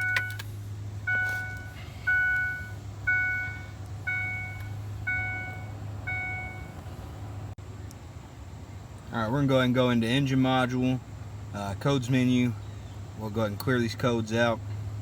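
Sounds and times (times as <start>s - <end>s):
dashboard warning chime: 0.0s - 0.4s, 1.0s - 6.8s
steady low hum: 0.0s - 15.0s.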